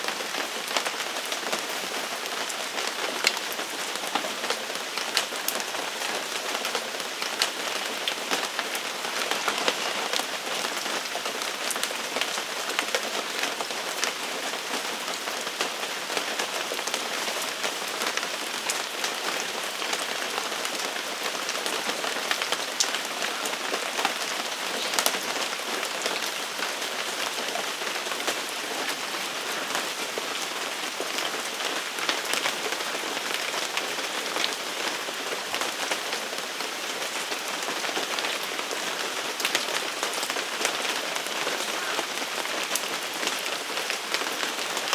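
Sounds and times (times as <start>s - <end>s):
steady rain falling: 0.0s - 44.9s.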